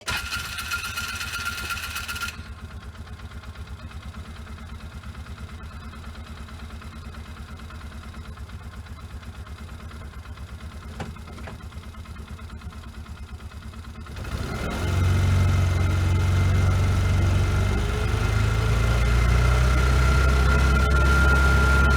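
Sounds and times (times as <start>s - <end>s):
vehicle engine idling and revving: 0.0s - 21.9s
high steady whine: 18.4s - 21.9s.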